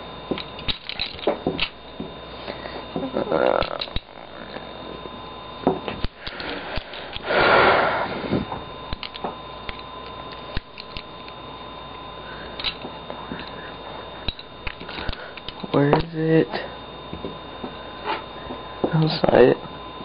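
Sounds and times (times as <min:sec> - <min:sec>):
loud breath: 0:06.2 - 0:08.5.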